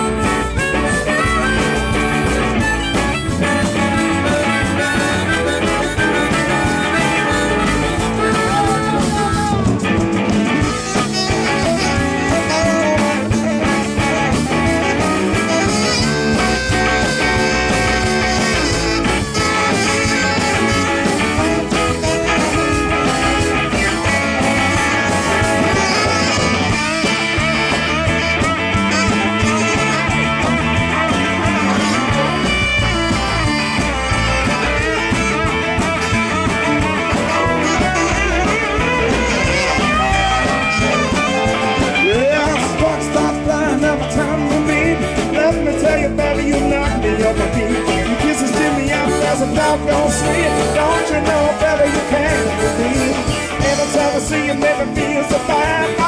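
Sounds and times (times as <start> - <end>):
blues-rock band playing: 0.0 - 56.0
electric guitar: 0.0 - 56.0.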